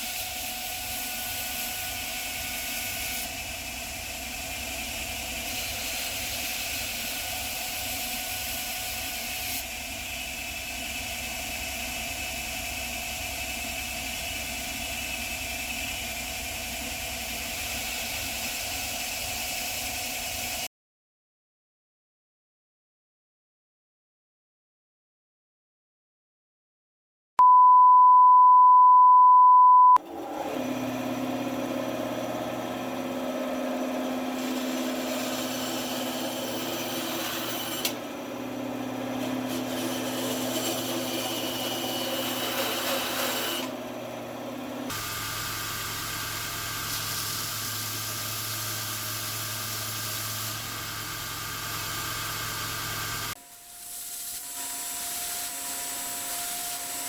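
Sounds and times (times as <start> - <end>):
power tool running: 0.0 - 20.7, 30.0 - 57.0
test tone beep: 27.4 - 30.0.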